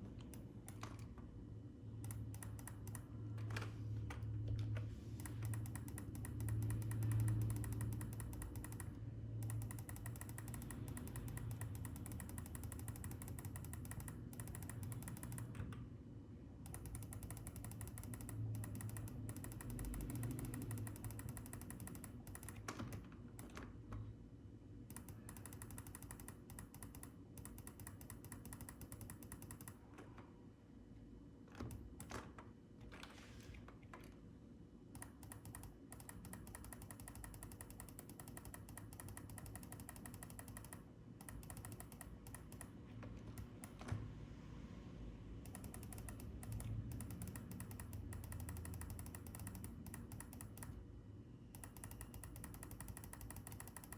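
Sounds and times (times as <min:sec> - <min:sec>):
steady low hum: 0:00.0 - 0:53.9
computer keyboard clicking: 0:02.0 - 0:15.8, 0:16.6 - 0:23.6, 0:24.9 - 0:29.9, 0:35.0 - 0:44.0, 0:45.4 - 0:50.8, 0:51.6 - 0:53.9.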